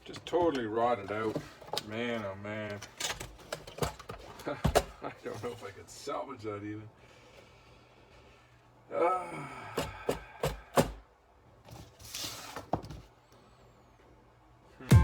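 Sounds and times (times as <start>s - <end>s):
voiced exclamation: 8.9s - 9.8s.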